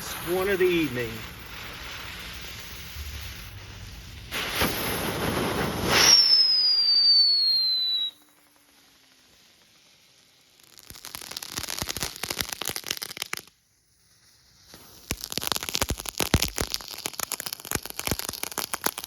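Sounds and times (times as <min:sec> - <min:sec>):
firework crackling: 0:00.0 - 0:19.0
firework hiss of sparks: 0:00.0 - 0:19.0
whistle gliding down in pitch: 0:05.9 - 0:08.2.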